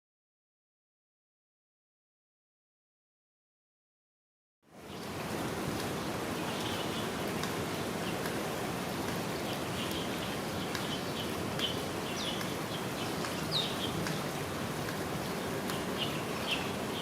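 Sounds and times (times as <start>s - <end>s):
flowing stream water: 4.7s - 17.0s.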